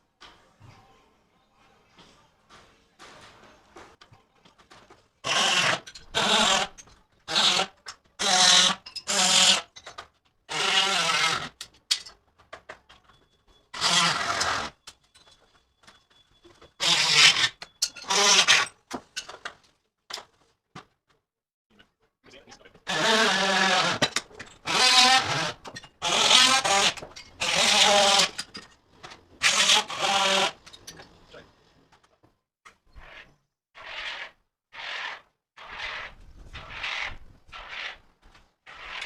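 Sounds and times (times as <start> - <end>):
power drill driving screws: 5.2 - 9.6, 13.8 - 14.8, 22.9 - 28.4, 29.4 - 30.6.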